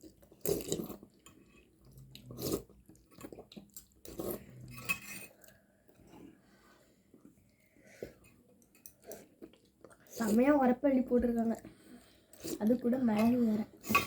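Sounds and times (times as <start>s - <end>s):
slurping: 0.3s - 5.6s, 11.6s - 14.0s.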